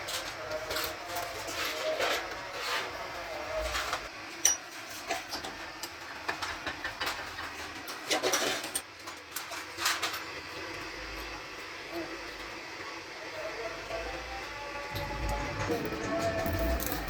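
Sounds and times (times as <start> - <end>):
metal parts and tools clinking: 15.0 - 17.0
metal parts rattling: 15.0 - 17.0.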